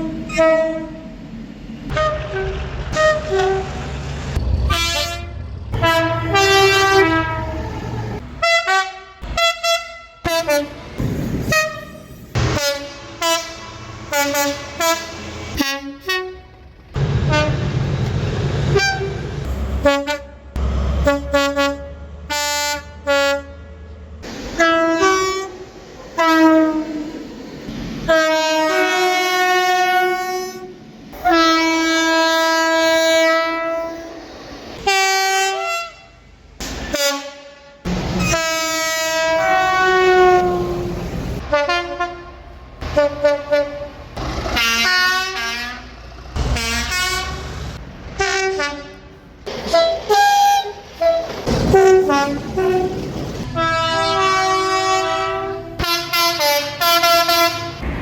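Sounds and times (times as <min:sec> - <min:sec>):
train air horns: 0:00.0 - 0:01.2, 0:01.9 - 0:16.6, 0:17.2 - 0:17.7, 0:18.7 - 0:27.4, 0:28.0 - 0:57.8
low rumble: 0:03.8 - 0:08.4.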